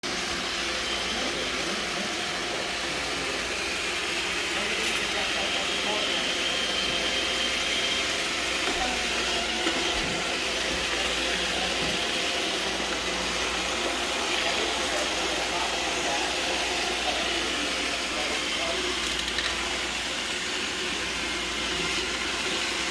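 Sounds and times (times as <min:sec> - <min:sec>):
robot vacuum humming: 0:00.0 - 0:22.9.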